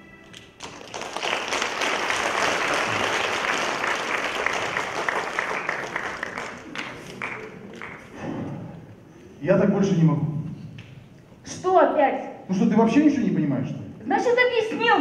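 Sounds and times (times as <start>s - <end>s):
audience applauding: 0.4s - 8.2s.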